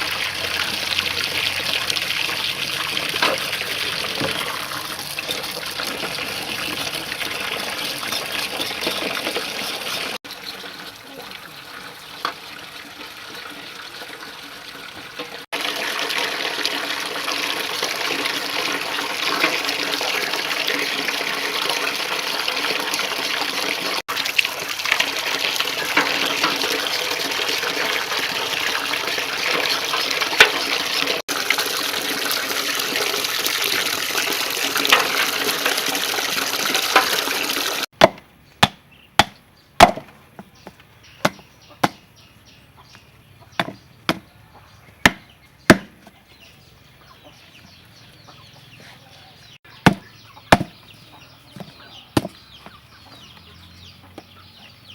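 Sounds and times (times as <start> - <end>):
tap water splashing into sink: 0.0 - 10.0, 14.9 - 37.8.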